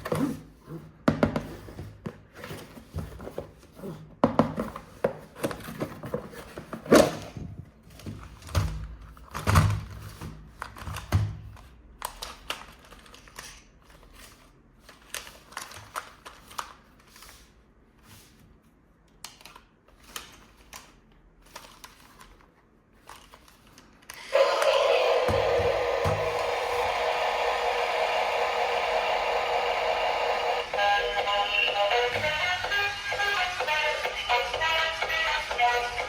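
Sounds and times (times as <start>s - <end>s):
loud background music: 24.3s - 36.0s.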